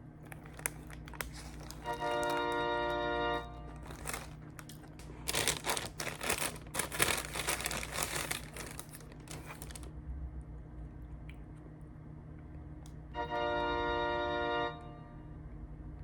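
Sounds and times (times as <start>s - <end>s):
wrapping crumpled and crinkled: 0.0s - 9.9s.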